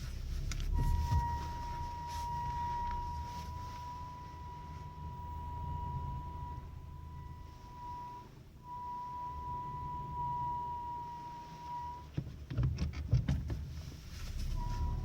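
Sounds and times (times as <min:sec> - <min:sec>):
low rumble: 0:00.0 - 0:12.0
high-pitched brake squeak: 0:00.0 - 0:12.2, 0:14.4 - 0:15.0.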